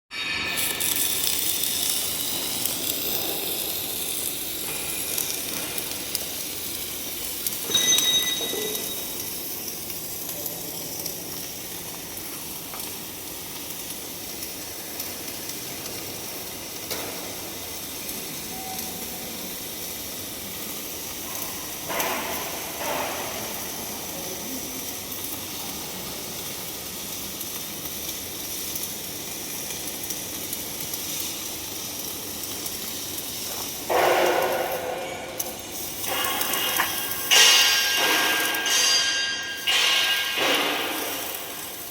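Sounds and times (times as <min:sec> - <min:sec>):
welding arc sizzling hiss: 0:00.1 - 0:41.9.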